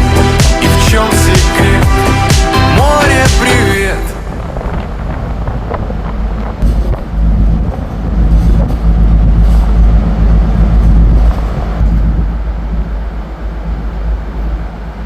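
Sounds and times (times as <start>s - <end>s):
ferry low rumble: 0.0s - 15.0s.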